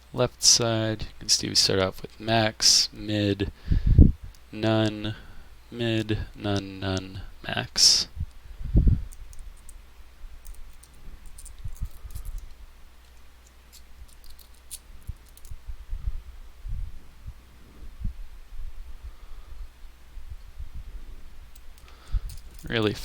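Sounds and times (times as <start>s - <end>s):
small metallic clicks: 10.4s - 15.6s, 21.5s - 23.0s.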